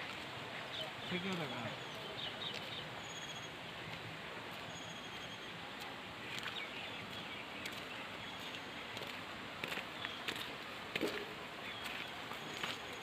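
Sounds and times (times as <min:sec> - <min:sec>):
mountain stream rushing: 0:00.0 - 0:13.0
faint bird chirps: 0:00.7 - 0:03.6, 0:04.6 - 0:05.6.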